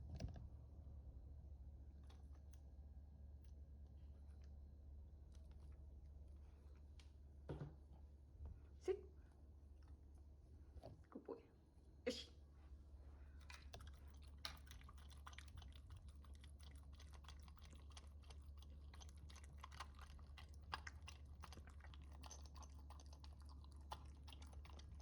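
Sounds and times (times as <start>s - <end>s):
dog licking and chewing: 13.3s - 25.0s.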